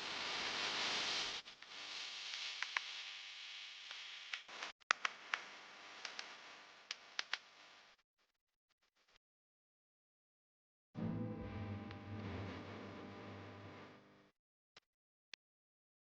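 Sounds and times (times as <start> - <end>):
food sizzling in a pan: 0.0 - 4.3
sharp pops and crackles: 1.6 - 3.0, 3.8 - 7.5.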